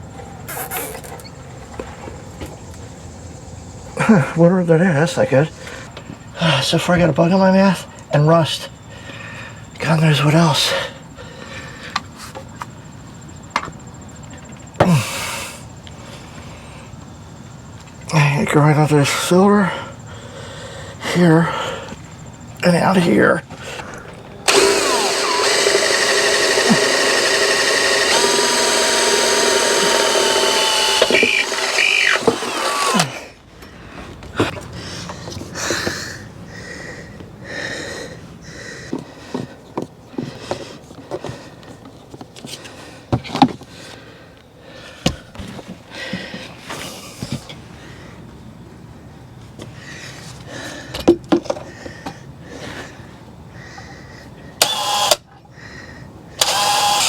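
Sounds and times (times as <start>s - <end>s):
electric drill running: 24.2s - 33.2s, 54.6s - 55.2s, 56.4s - 57.0s.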